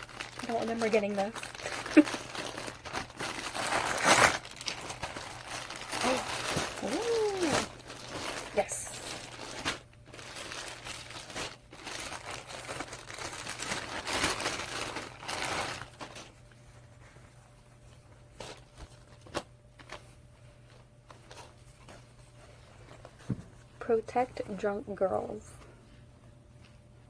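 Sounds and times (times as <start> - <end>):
packaging crinkling and tearing: 0.0 - 16.6, 18.2 - 23.2.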